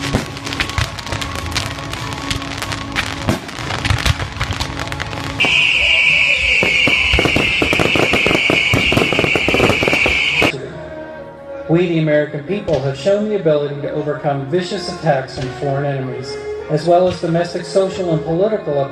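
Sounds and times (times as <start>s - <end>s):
fireworks banging and crackling: 0.0s - 10.5s
shrill firework hiss: 0.0s - 10.5s
music playing: 0.0s - 18.9s.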